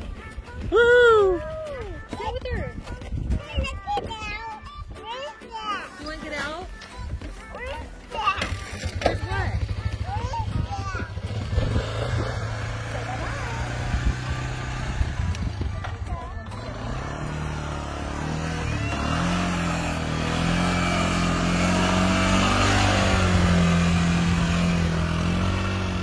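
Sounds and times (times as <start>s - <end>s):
small vehicle engine revving: 8.3s - 26.0s.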